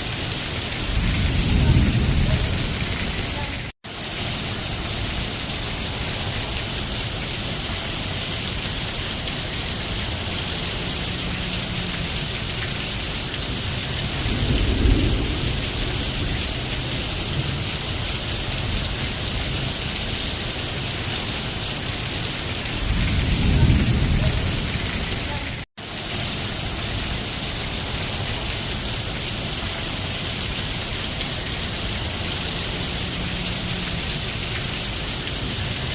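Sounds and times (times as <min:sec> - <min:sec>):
steady rain falling: 0:00.0 - 0:35.9
low rumble of thunder: 0:00.7 - 0:03.7, 0:13.6 - 0:19.8, 0:22.7 - 0:25.4.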